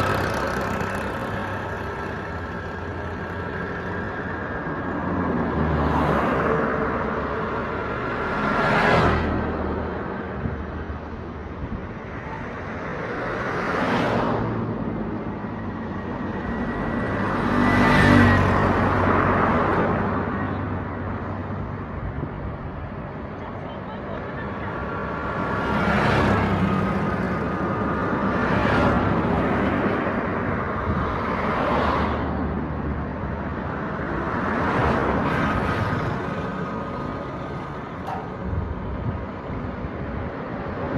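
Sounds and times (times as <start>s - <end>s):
steady engine hum: 0.0s - 8.5s
vehicles passing close by: 0.0s - 40.9s.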